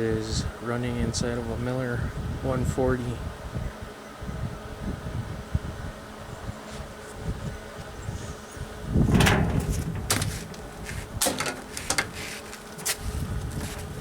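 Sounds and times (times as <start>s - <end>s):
steady low hum: 0.0s - 14.0s
loud clatter: 9.1s - 12.2s.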